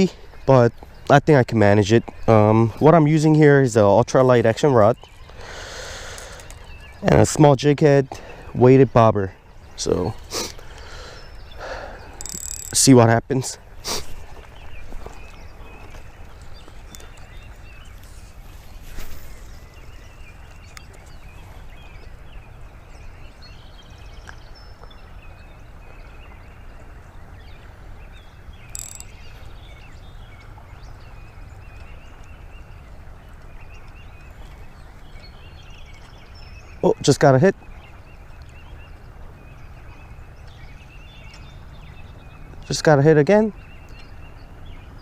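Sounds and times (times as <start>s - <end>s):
bird chirps: 9.4s - 13.1s, 27.4s - 32.8s.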